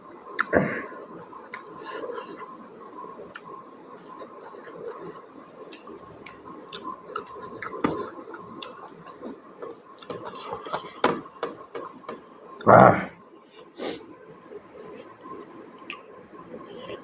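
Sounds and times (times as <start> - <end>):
mouth clicks and smacks: 0.4 - 0.6, 1.5 - 1.8, 3.3 - 3.6, 5.7 - 12.7.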